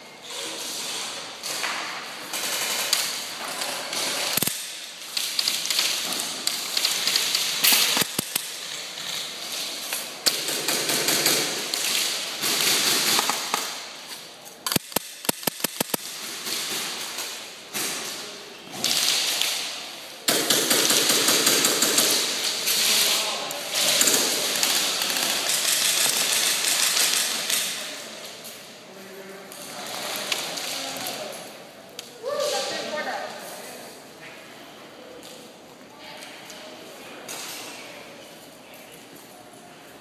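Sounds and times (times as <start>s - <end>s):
airsoft guns firing: 10.2s - 13.8s, 14.7s - 18.2s, 18.8s - 22.8s.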